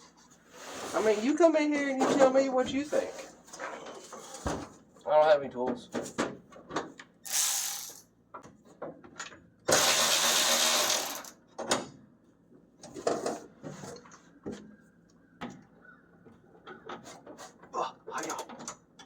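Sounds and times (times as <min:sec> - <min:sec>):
power tool running: 0:07.3 - 0:08.0, 0:09.7 - 0:11.3.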